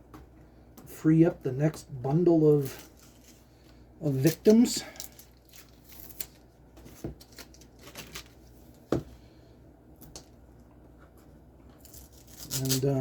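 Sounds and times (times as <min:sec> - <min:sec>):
packaging rustling and clicking: 0:04.2 - 0:08.8.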